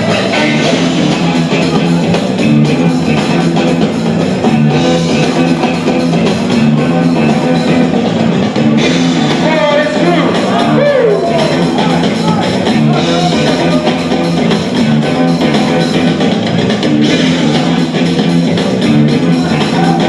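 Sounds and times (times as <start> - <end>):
loud rock music: 0.0 - 20.0.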